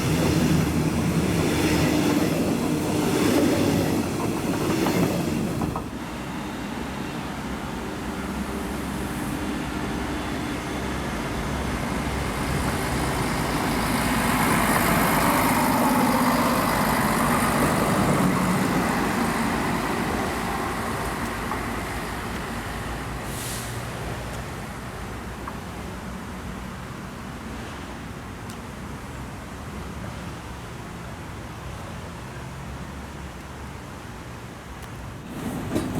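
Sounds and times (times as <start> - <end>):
diesel train passing: 0.0 - 26.6, 35.0 - 35.9.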